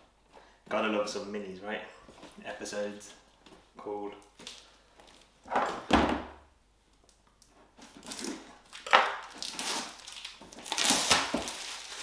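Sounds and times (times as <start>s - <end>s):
packaging rustling: 7.8s - 12.0s.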